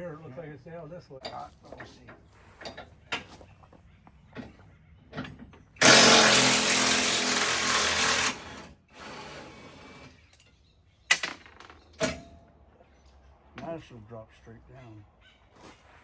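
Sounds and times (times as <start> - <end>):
power tool running: 5.8 - 10.2.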